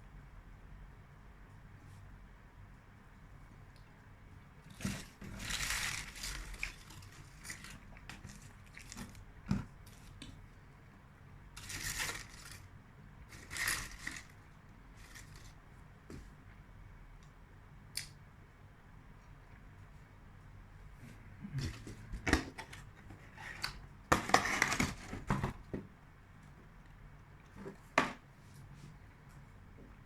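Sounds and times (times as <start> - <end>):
wrapper crinkling: 4.7 - 9.2, 11.6 - 12.7, 13.3 - 14.3.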